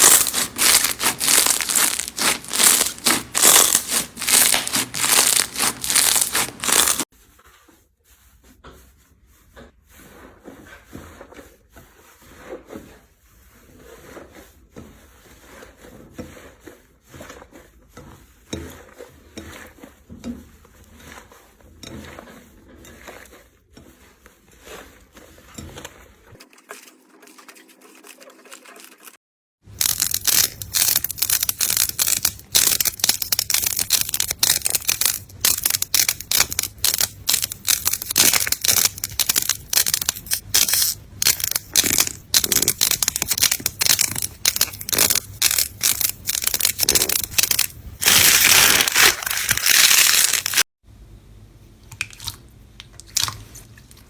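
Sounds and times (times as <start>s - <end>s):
slime crackling and popping: 0.0s - 7.1s, 29.7s - 50.6s.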